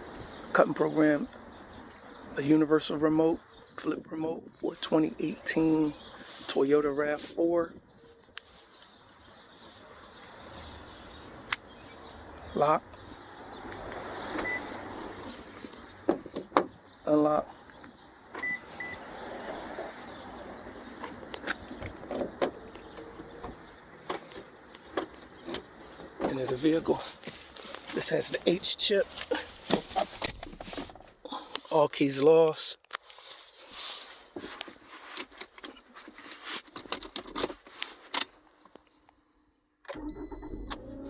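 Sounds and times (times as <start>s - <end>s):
keys and car door handling: 21.0s - 28.6s, 29.2s - 31.2s, 36.6s - 38.4s.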